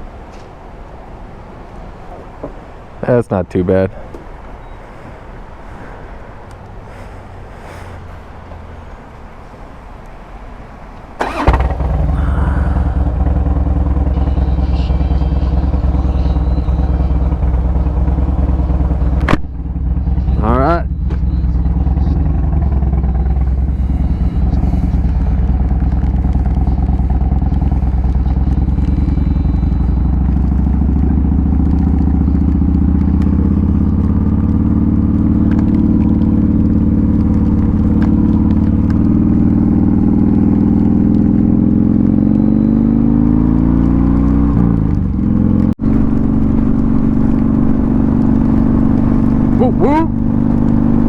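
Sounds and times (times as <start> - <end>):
motorcycle engine running: 11.2 - 51.0.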